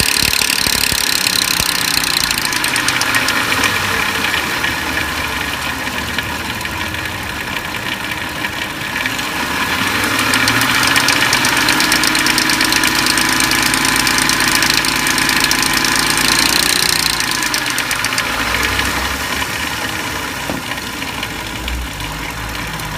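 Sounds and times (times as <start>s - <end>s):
timing chain rattle: 0.0s - 3.3s, 10.3s - 18.2s
car engine revving: 0.0s - 22.9s.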